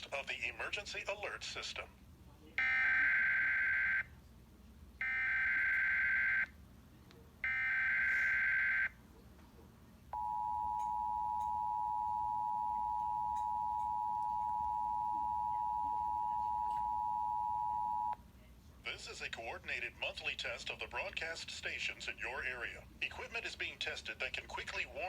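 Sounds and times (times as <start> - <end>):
two-tone attention signal: 10.2 - 18.2.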